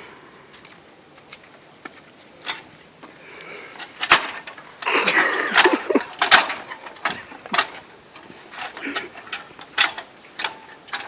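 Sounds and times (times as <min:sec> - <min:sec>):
metal clanks and scraping: 0:02.4 - 0:02.8, 0:03.7 - 0:11.0.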